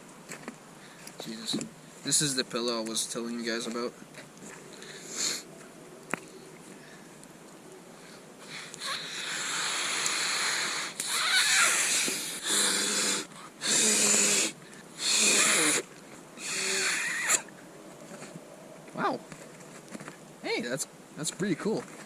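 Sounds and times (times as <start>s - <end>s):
person drawing breath: 4.5s - 5.6s
person blowing into a valve: 8.6s - 17.5s.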